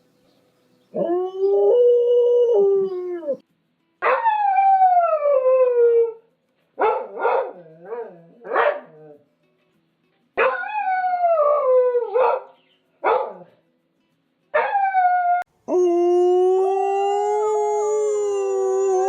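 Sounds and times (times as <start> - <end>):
dog howling: 14.6 - 19.0.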